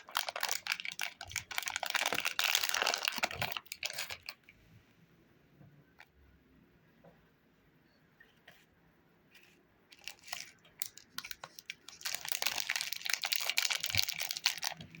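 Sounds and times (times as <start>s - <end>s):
plastic wrapper crinkling: 0.0s - 4.4s, 9.9s - 15.0s.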